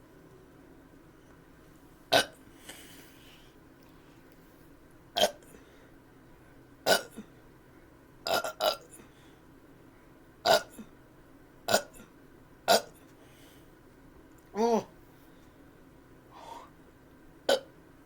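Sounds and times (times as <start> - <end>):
man burping: 6.8 - 7.3, 8.3 - 8.9, 10.4 - 10.9, 12.7 - 13.0, 17.5 - 17.7.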